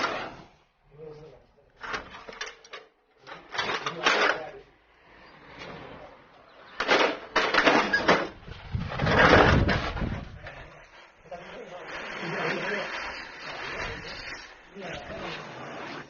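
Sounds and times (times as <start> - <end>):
metal clattering and rattling: 6.8 - 10.4.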